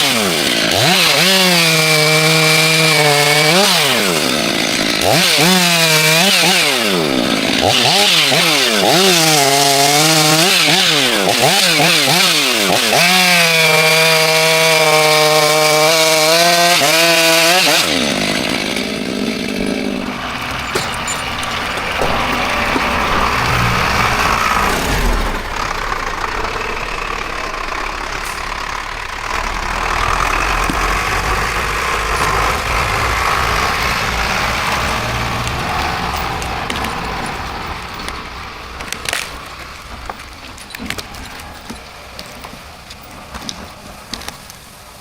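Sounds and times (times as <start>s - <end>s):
engine running: 15.4s - 41.0s
sharp knocks: 17.6s - 26.4s.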